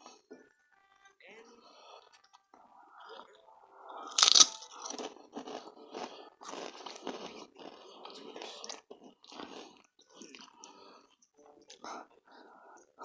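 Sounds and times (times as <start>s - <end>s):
crunchy chewing: 4.0s - 12.2s
person biting crunchy food: 4.1s - 7.6s.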